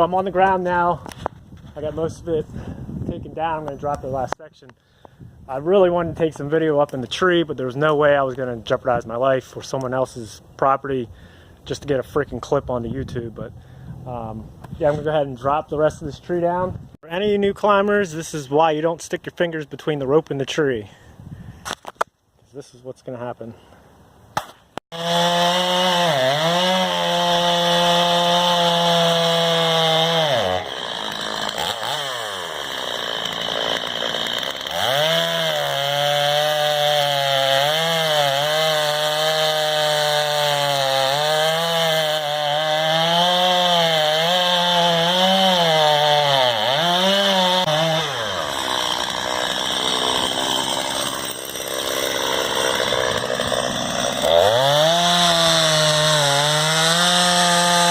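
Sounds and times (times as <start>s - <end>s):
chainsaw cutting wood: 24.4s - 57.9s.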